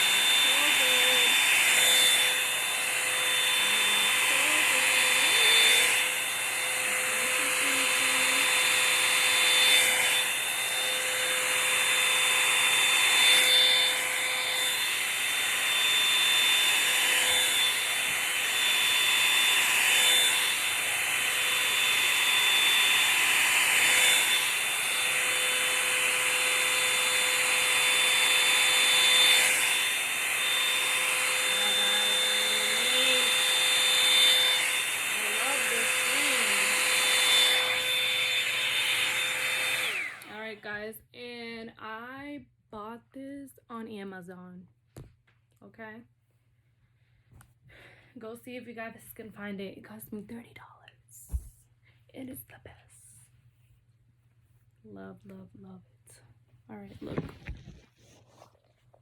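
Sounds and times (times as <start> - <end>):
hot-air brush dryer running: 0.0 - 40.6.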